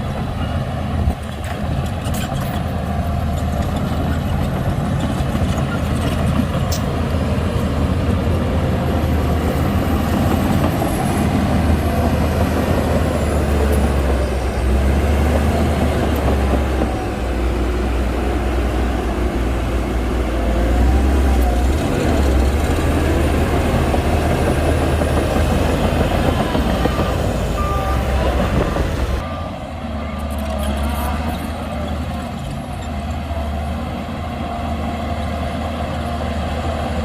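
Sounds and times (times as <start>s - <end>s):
bulldozer diesel engine running: 0.0s - 37.0s
short beeps: 26.8s - 28.6s.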